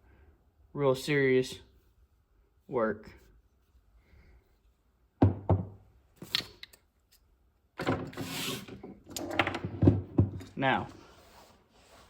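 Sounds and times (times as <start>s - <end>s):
hard objects knocking: 5.2s - 5.8s, 8.8s - 10.6s.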